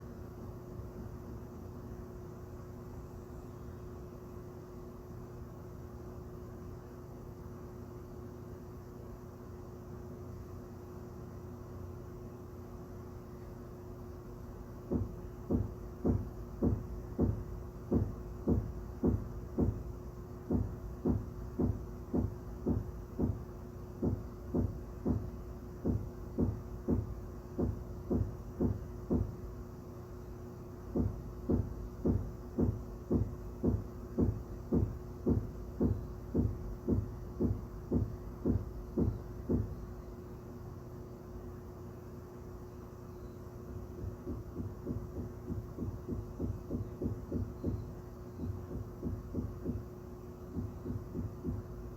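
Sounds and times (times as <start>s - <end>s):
faint steady hum: 0.0s - 51.9s
dull knocking through ceiling: 14.9s - 29.5s, 30.9s - 39.8s, 44.0s - 51.9s.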